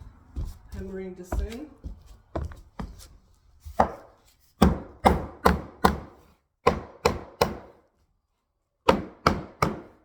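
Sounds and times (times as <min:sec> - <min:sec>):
hammer knocking on wood: 0:04.6 - 0:07.7, 0:08.9 - 0:10.0.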